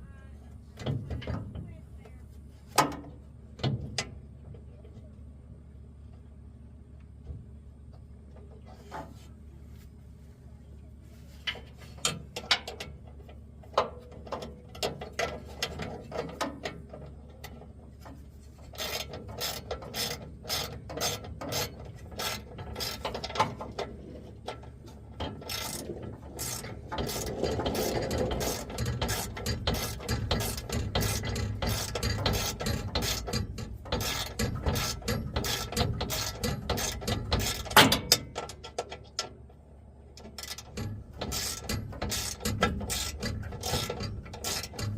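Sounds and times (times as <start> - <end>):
ratchet wrench clicking: 25.4 - 38.9, 40.3 - 44.9.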